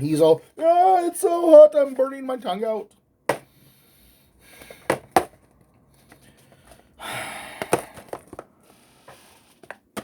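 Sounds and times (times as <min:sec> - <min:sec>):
rustling or scraping: 0:08.0 - 0:09.8.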